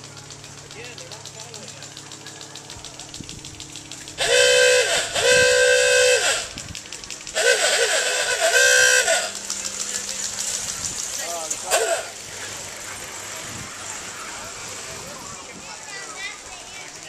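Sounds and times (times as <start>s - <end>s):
loud horn blasts: 4.2s - 6.6s, 7.4s - 9.4s, 11.7s - 12.2s.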